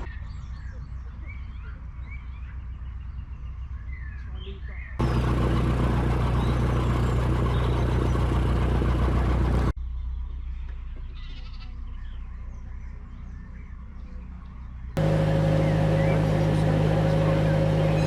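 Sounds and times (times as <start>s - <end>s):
birds chirping: 0.0s - 18.0s
diesel engine running: 5.0s - 10.1s, 14.8s - 18.0s.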